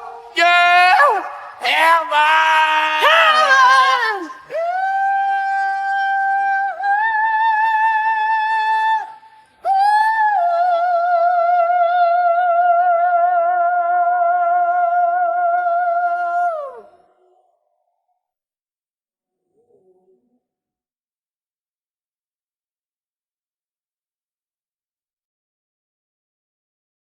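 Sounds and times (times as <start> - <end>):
high solo voice singing: 0.0 - 17.1.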